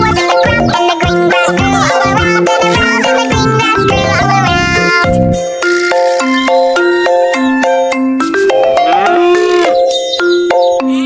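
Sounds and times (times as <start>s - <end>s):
mallet percussion children's tune: 0.0s - 11.0s.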